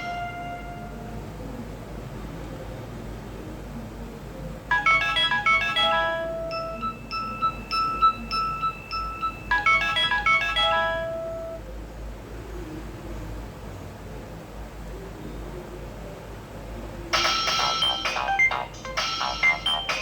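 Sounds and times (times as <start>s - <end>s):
phone ringtone melody: 4.7s - 11.6s, 17.2s - 20.0s.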